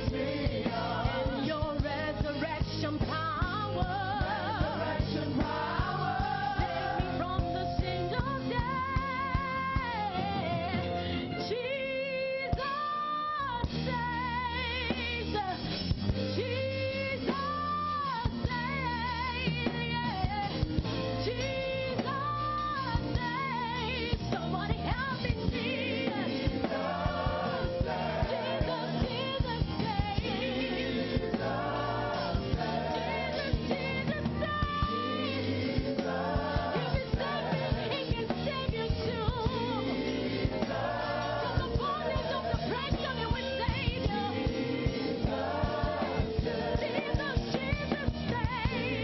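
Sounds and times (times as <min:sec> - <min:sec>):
voices singing with vibrato: 0:00.0 - 0:12.8, 0:24.9 - 0:49.0
band playing a steady beat: 0:00.0 - 0:12.9, 0:13.6 - 0:49.0.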